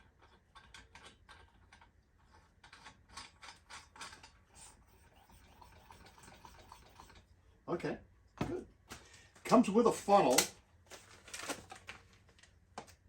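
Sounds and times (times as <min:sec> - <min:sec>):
lantern parts clicking and rattling: 0:00.1 - 0:04.4.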